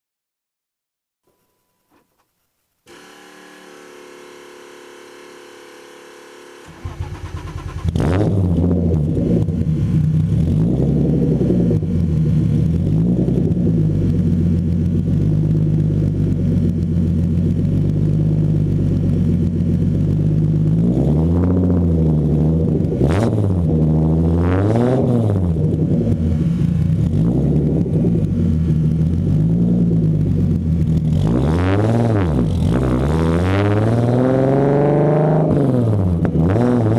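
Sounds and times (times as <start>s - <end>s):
engine blips: 2.9s - 36.9s
car engine idling loudly: 3.7s - 24.2s, 25.3s - 31.3s
engine cranking: 6.5s - 8.8s.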